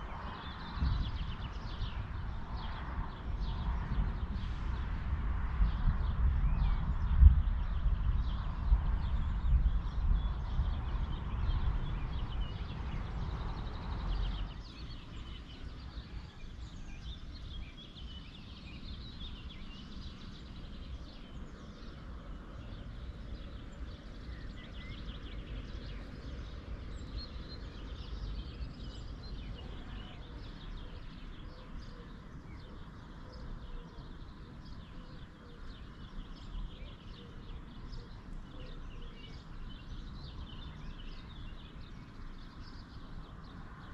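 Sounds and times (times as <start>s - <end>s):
birds chirping: 6.4s - 43.9s.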